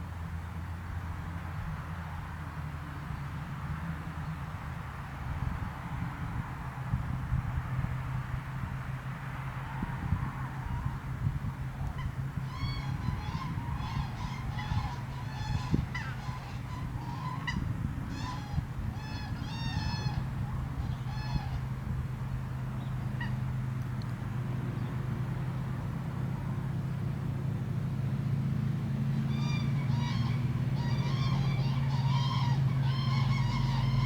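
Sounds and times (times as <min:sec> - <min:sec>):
geese honking: 0:11.9 - 0:21.7, 0:23.0 - 0:23.4, 0:29.2 - 0:34.0.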